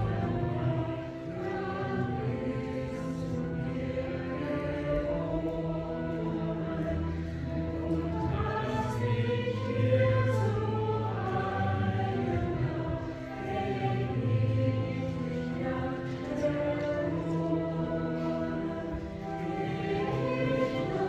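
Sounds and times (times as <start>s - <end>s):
choir singing a hymn: 0.0s - 21.0s
low organ notes: 0.0s - 21.0s.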